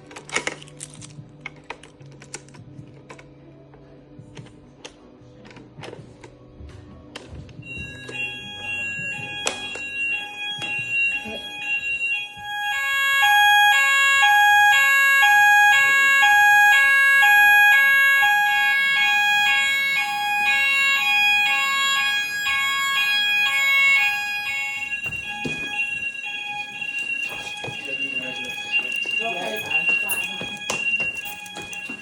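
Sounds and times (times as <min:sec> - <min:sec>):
fire alarm alternating tones: 0:07.6 - 0:32.0.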